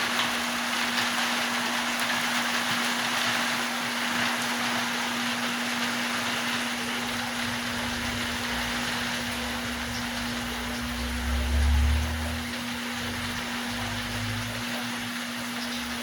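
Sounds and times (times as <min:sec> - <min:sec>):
aquarium water rushing: 0:00.0 - 0:16.0
electric pump hum: 0:00.0 - 0:16.0
low rumble: 0:07.7 - 0:13.8.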